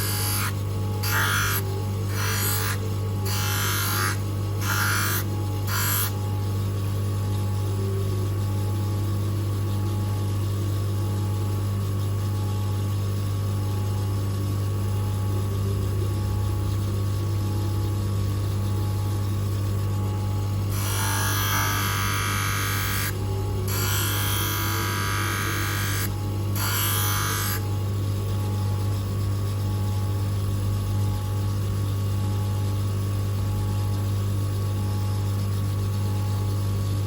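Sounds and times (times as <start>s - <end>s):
lens edging machine motor humming: 0.0s - 6.2s, 20.7s - 27.6s.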